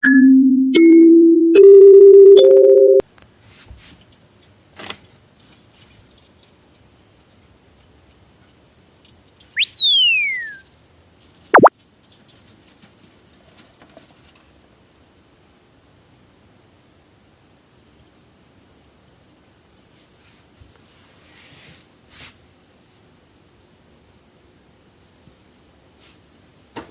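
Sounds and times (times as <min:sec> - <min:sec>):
electronic beep tone rising: 0:09.6 - 0:10.7
falling whistle-like pew sweep: 0:09.6 - 0:10.7
quick downward zip: 0:09.6 - 0:10.7.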